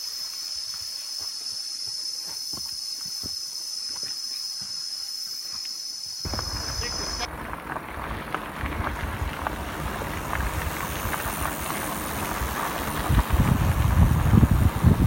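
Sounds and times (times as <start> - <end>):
steady outdoor rush: 6.2 - 15.0
wind buffeting microphone: 6.3 - 15.0.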